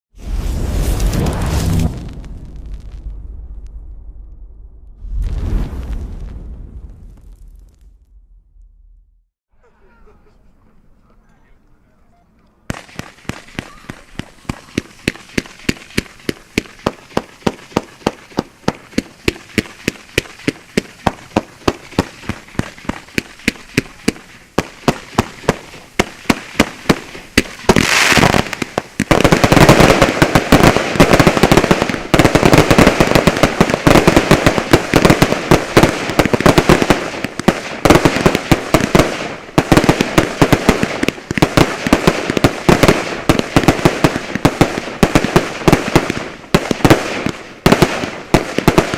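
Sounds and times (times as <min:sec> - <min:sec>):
fireworks bangs and crackle: 0:00.1 - 0:09.0, 0:12.7 - 0:48.9
firework hissing burst: 0:00.2 - 0:03.4, 0:12.7 - 0:43.6.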